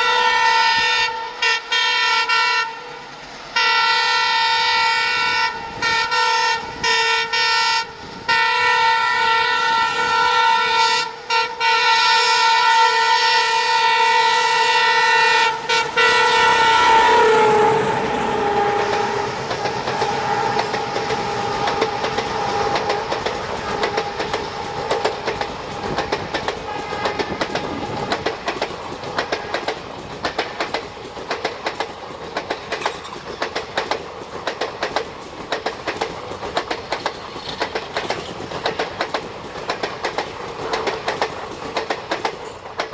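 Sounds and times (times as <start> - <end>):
locomotive multi-tone horn: 0.0 - 26.0, 26.6 - 27.6
wheels clicking over rail joints: 14.6 - 42.9.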